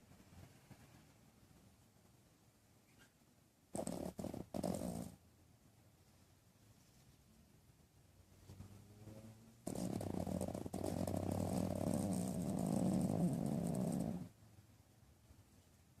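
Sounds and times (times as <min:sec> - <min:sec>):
small dog snoring: 0:03.7 - 0:05.2, 0:09.0 - 0:14.4.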